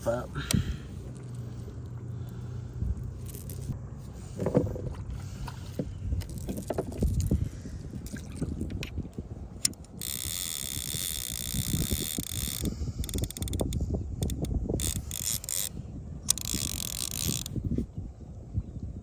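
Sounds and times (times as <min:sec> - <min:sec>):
wind rumble on microphone: 0:00.0 - 0:19.0
reel clicks: 0:03.1 - 0:03.8, 0:05.7 - 0:07.4, 0:08.0 - 0:17.8
fishing reel ratcheting: 0:03.2 - 0:03.7, 0:09.6 - 0:17.6.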